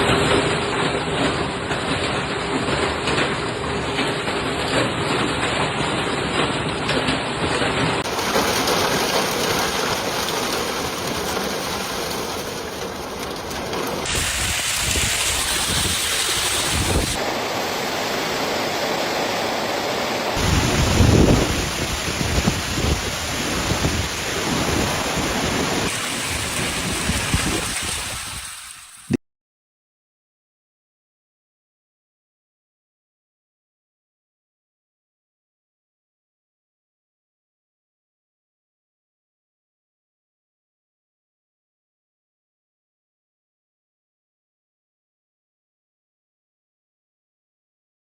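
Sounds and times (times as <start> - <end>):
heavy rain pelting down: 0.0 - 29.2.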